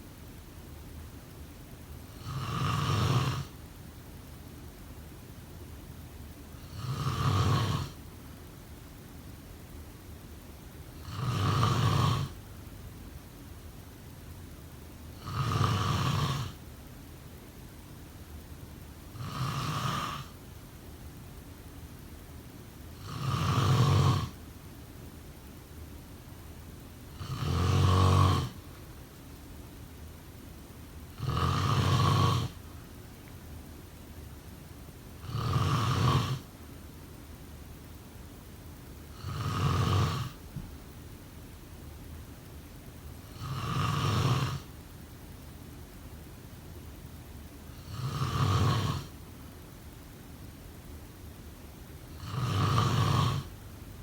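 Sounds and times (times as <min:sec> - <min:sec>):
faint steady hiss: 0:00.0 - 0:54.0
person snoring: 0:02.2 - 0:03.6, 0:06.6 - 0:08.0, 0:11.0 - 0:12.4, 0:15.2 - 0:16.6, 0:19.2 - 0:20.4, 0:23.0 - 0:24.4, 0:27.1 - 0:28.6, 0:31.2 - 0:32.6, 0:35.2 - 0:36.5, 0:39.2 - 0:40.4, 0:43.3 - 0:44.7, 0:47.8 - 0:49.1, 0:52.2 - 0:53.5.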